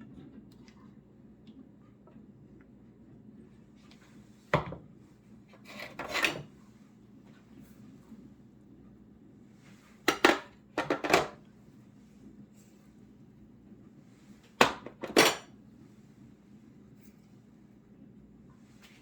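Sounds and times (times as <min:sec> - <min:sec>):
dishes and utensils clinking: 0:14.6 - 0:15.5.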